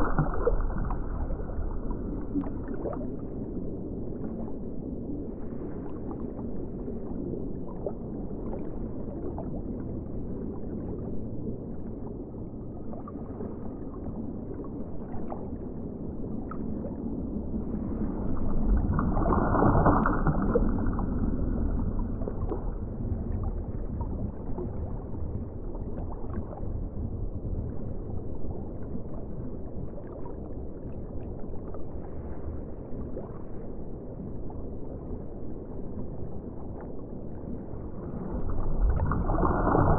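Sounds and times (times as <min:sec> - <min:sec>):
muffled underwater water rush: 0:00.0 - 0:39.9.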